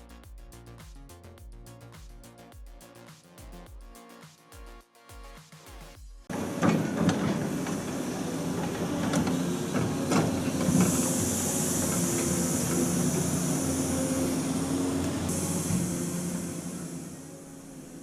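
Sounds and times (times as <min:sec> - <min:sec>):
sharp knocks and clanks: 0:06.3 - 0:11.1
sawmill machinery running: 0:06.3 - 0:18.0
high hiss: 0:07.6 - 0:18.0.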